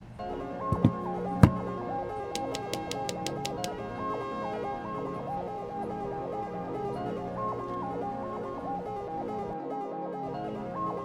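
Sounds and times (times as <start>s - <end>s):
short sharp thumps: 0.8s - 1.6s.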